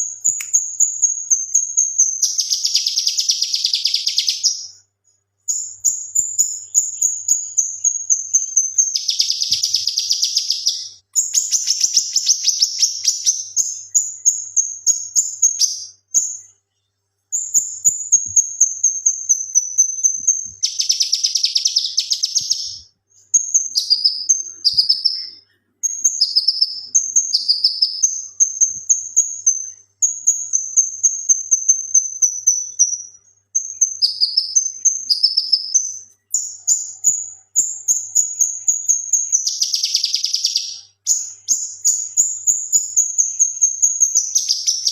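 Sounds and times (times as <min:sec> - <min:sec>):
bird singing whistled phrases: 0:00.2 - 0:04.8, 0:05.5 - 0:16.4, 0:17.4 - 0:44.9.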